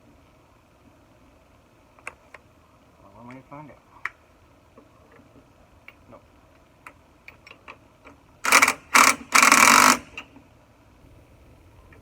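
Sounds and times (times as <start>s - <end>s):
loud rapid mechanical rattling: 8.4s - 10.2s.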